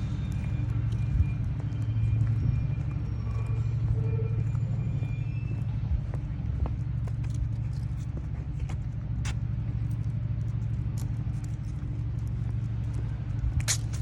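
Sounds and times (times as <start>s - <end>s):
low mechanical hum: 0.0s - 14.0s
light ticks: 7.2s - 14.0s.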